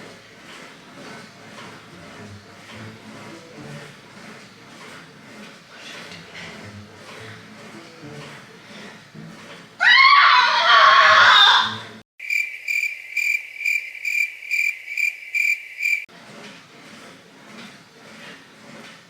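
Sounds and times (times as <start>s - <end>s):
wavering animal screech: 9.8s - 11.9s
high cricket-like chirps: 12.2s - 16.0s.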